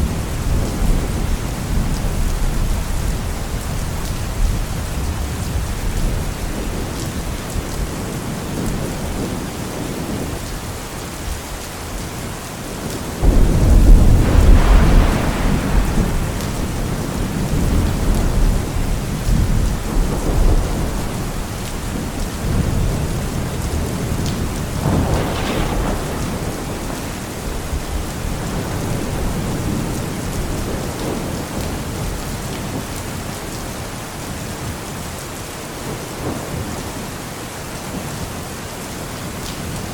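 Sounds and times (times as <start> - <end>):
heavy rain: 0.0 - 39.9
rolling thunder: 12.8 - 33.0.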